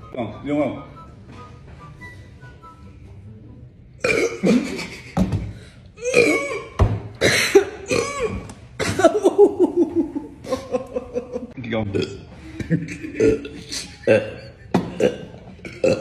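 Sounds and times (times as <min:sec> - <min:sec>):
person coughing and spluttering: 0:04.0 - 0:05.2, 0:06.0 - 0:09.2, 0:11.9 - 0:16.0.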